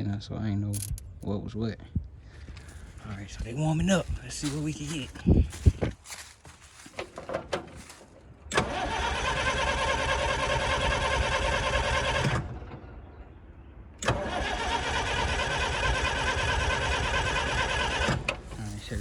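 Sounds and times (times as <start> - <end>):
starter motor cranking diesel engine: 8.5 - 12.8, 14.0 - 19.0.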